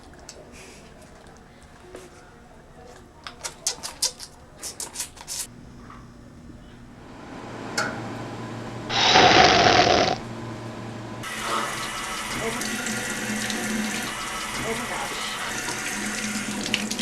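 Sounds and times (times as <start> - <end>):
low hum: 7.0 - 11.3
loud rush of noise: 8.8 - 10.4.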